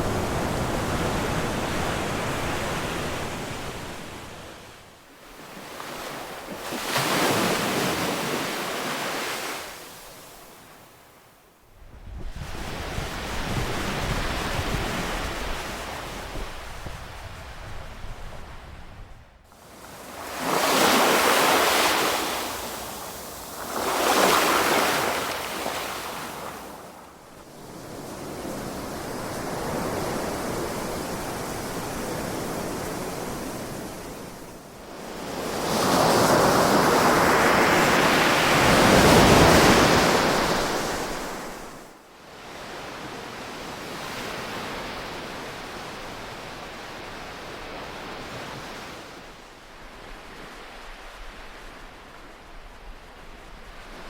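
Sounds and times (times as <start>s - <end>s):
ocean waves surging: 19.7s - 26.7s.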